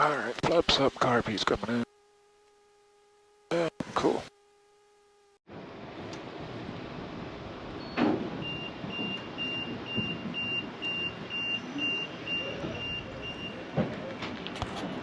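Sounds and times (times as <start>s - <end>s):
rumbling background noise: 5.5s - 15.0s.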